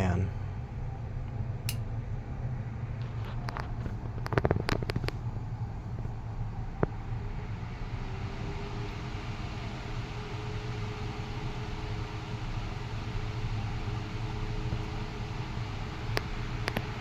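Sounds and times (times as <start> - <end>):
air rushing from fan blades: 0.0 - 17.0
fan motor humming: 0.0 - 17.0
fan clicks: 1.2 - 1.9, 3.0 - 7.1, 14.7 - 17.0.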